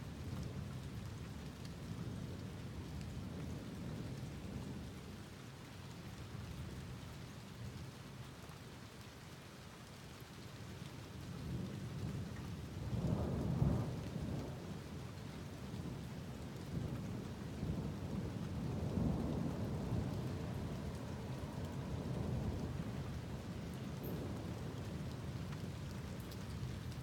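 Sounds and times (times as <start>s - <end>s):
steady rain falling: 0.0s - 27.0s.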